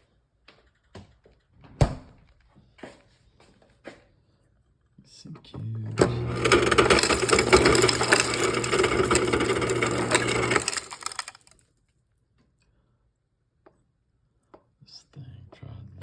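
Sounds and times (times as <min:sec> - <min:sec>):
ice dispenser motor humming: 0:05.9 - 0:11.6
ice crusher grinding: 0:06.0 - 0:11.6
crushed ice clattering: 0:06.1 - 0:11.6.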